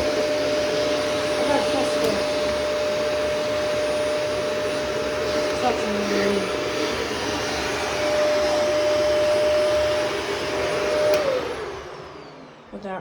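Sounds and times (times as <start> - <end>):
vacuum cleaner motor whining: 0.0 - 13.0
vacuum cleaner switch click: 1.9 - 2.7, 11.0 - 11.4.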